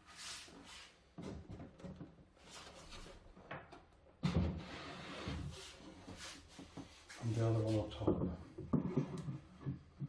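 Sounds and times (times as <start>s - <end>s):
wooden knocks and rubbing: 8.0s - 10.0s.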